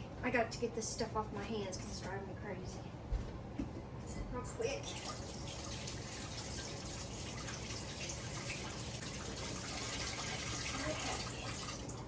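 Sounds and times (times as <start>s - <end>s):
kitchen tap running: 4.6s - 12.0s.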